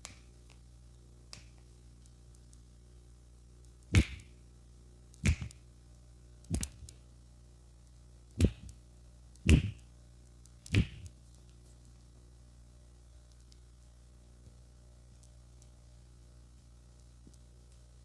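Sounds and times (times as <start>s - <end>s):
hand slaps on head: 4.0s - 4.3s, 5.2s - 5.6s, 6.5s - 6.9s, 8.4s - 8.7s, 9.5s - 9.8s, 10.7s - 11.1s.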